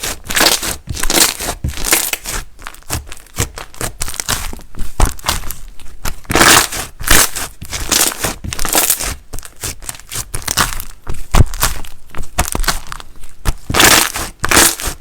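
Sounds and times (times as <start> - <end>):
brittle material crunching: 0.0 - 15.0.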